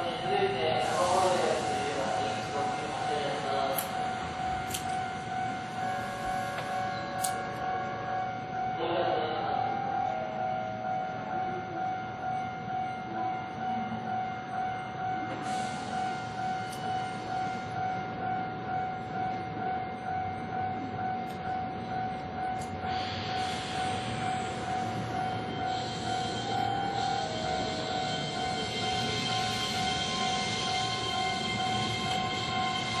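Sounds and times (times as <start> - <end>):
level crossing alarm ringing: 0.0 - 33.0.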